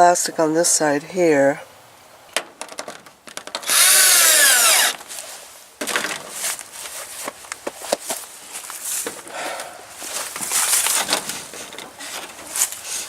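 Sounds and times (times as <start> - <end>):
rustling: 2.6 - 13.0
small power tool motor whirring: 3.6 - 5.0.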